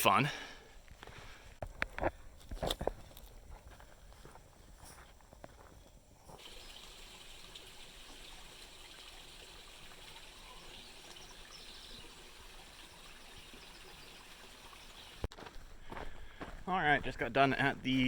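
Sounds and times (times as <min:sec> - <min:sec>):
stream trickling: 0:06.3 - 0:15.3.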